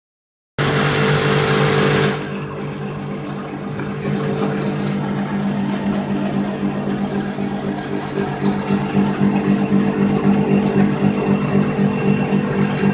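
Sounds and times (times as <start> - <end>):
lathe motor humming: 0.6 - 12.9.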